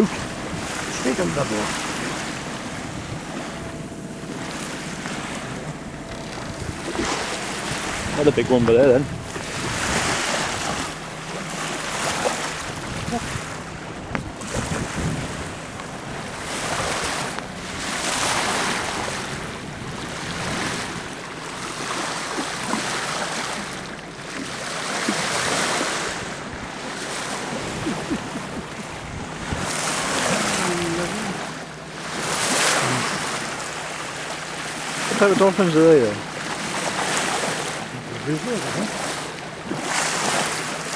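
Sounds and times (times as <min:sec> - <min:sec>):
wind buffeting microphone: 0:00.0 - 0:22.5, 0:25.1 - 0:31.4
water rushing along boat hull: 0:00.0 - 0:40.9.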